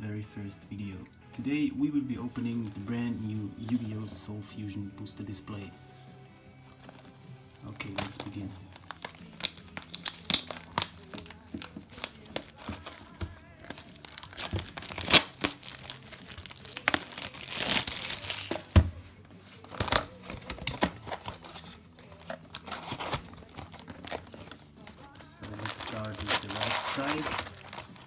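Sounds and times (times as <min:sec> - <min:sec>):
packaging crinkling and tearing: 0:06.7 - 0:18.8, 0:19.6 - 0:28.0.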